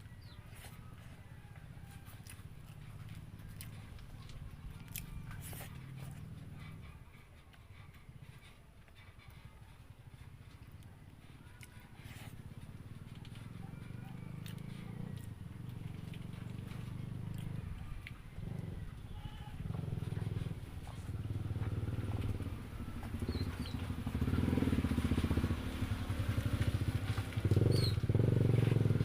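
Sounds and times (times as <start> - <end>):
small engine droning: 0.0 - 29.0.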